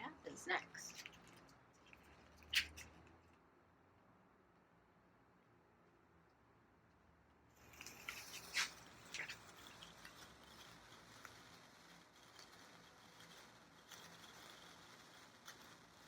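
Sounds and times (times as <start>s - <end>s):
sparkler fizzing and crackling: 7.6s - 16.0s.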